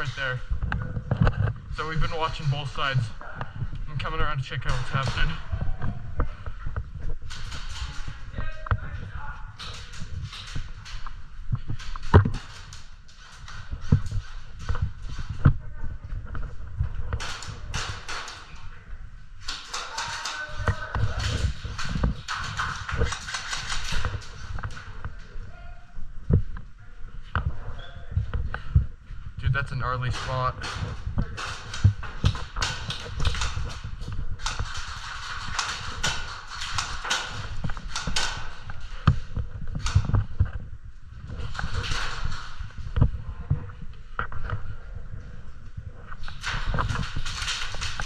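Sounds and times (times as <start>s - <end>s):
footsteps thumping: 0.0s - 48.0s
gear rattling: 16.2s - 25.4s, 29.4s - 43.2s
faint voices: 24.2s - 28.4s.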